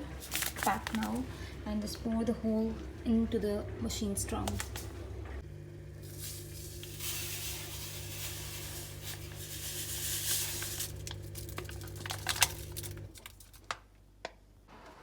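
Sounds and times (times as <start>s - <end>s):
packet crinkling: 0.1s - 1.4s, 4.4s - 4.9s, 6.1s - 13.8s
powder pouring hiss: 5.9s - 13.0s.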